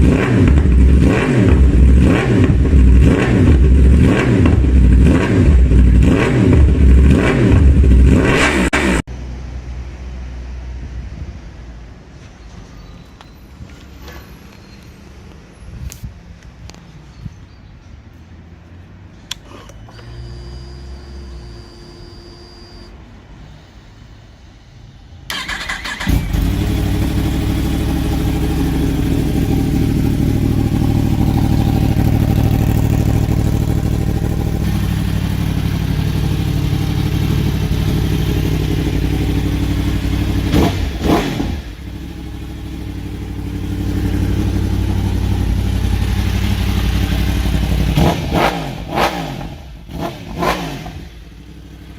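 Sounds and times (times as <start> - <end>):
motorcycle engine starting: 0.0 - 9.0, 19.3 - 22.4, 25.3 - 51.9
motorcycle engine idling: 25.4 - 41.0, 41.6 - 48.0, 51.0 - 51.9.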